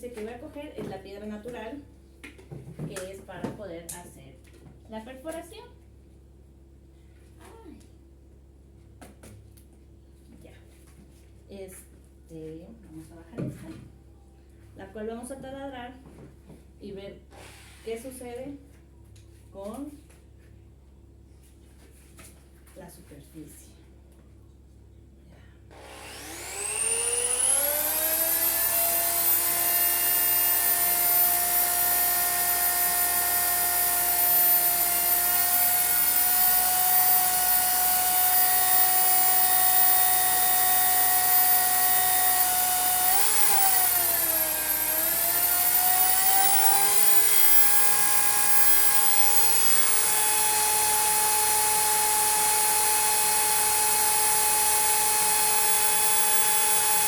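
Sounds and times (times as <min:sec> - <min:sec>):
electric drill drilling into stone: 0:25.7 - 0:57.0.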